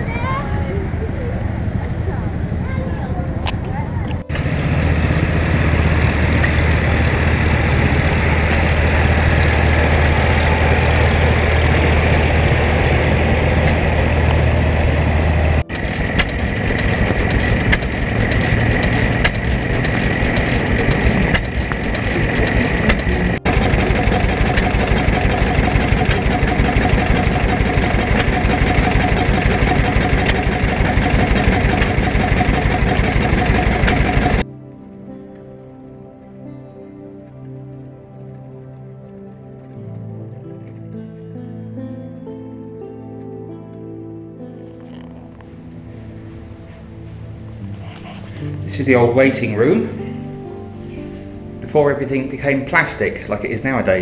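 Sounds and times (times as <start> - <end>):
rhythmic train wheel clatter: 0.0 - 34.4
train rumbling: 0.0 - 34.5.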